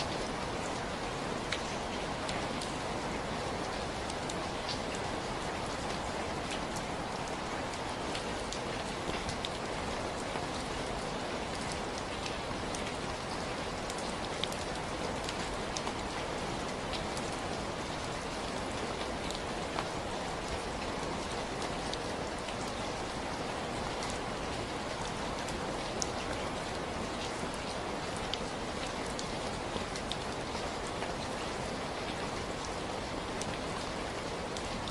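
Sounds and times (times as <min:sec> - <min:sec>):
steady rain falling: 0:00.0 - 0:34.9
raindrop ticks: 0:04.0 - 0:07.3, 0:13.8 - 0:16.2, 0:19.0 - 0:20.9.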